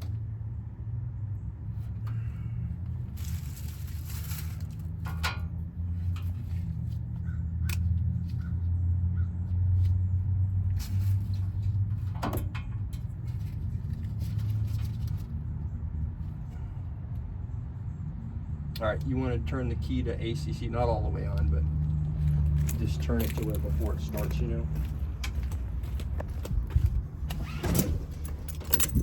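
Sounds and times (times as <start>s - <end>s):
low engine-like hum: 0.0s - 29.0s.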